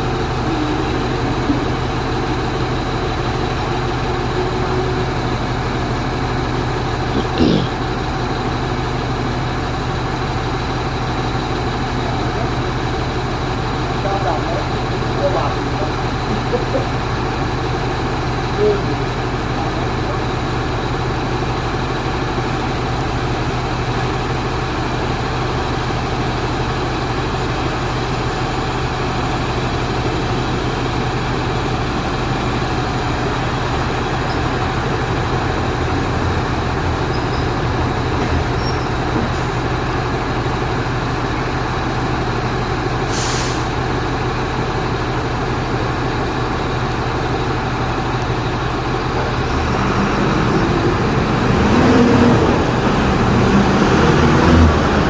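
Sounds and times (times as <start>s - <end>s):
diesel truck engine running: 0.0s - 55.0s
short hiss: 43.1s - 43.7s.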